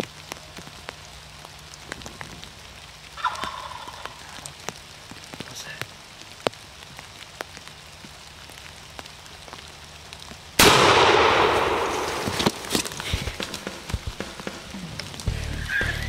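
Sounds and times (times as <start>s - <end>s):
shotgun shot: 10.6s - 13.0s.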